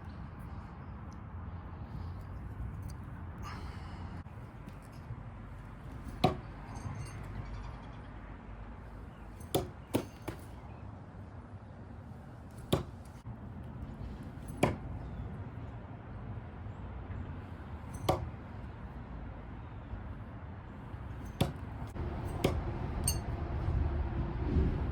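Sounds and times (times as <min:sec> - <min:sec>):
knives thunking into target: 0:05.9 - 0:07.3, 0:09.4 - 0:10.6, 0:12.5 - 0:13.2, 0:14.4 - 0:14.9, 0:17.9 - 0:18.4, 0:21.2 - 0:23.2.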